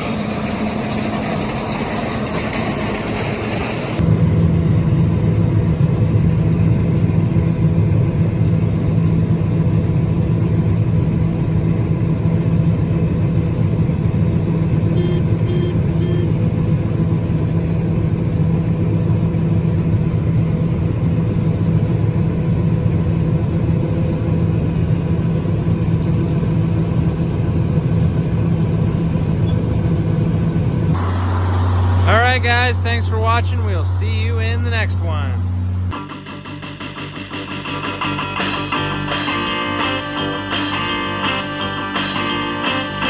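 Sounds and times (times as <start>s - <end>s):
diesel engine running: 0.0s - 36.0s
short high beeps: 15.0s - 16.3s.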